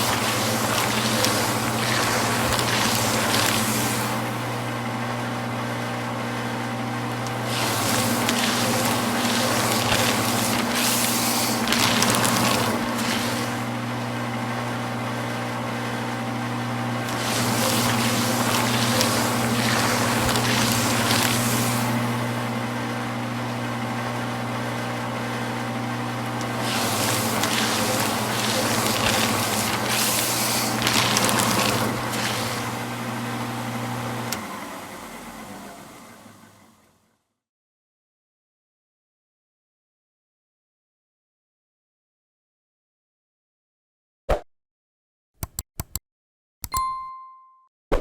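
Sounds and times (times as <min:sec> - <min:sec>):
paper shredding crackle: 0:00.0 - 0:36.1
paper shredder motor humming: 0:00.0 - 0:36.9.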